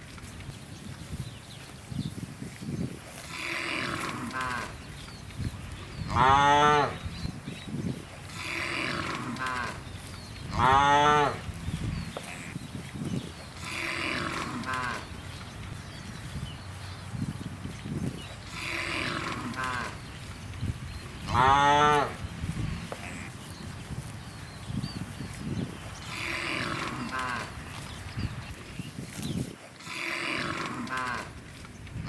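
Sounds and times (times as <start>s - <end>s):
cows mooing: 3.2s - 4.9s, 5.7s - 7.5s, 8.2s - 12.8s, 13.4s - 16.1s, 18.2s - 23.4s, 25.9s - 28.1s, 29.8s - 31.4s.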